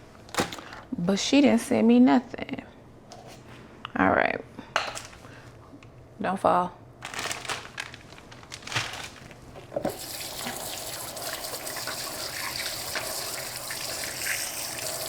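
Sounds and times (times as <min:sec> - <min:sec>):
tap running into sink: 0:09.8 - 0:15.0.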